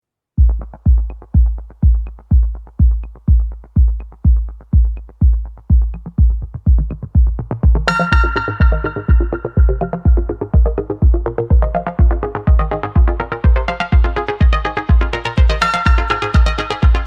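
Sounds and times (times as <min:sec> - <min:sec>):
electronic kick drum beat: 0:00.4 - 0:17.0
bright synth chords: 0:07.7 - 0:17.0.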